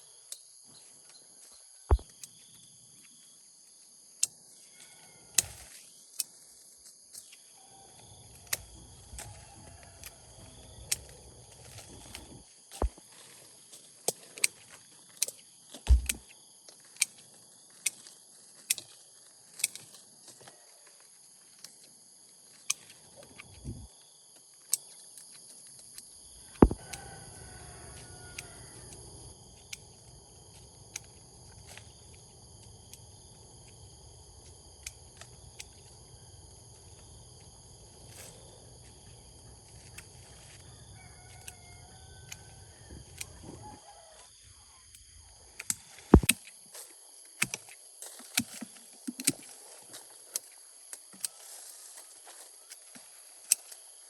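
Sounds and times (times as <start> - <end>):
sharp clicks and knocks: 15.9 - 16.2, 45.6 - 46.4.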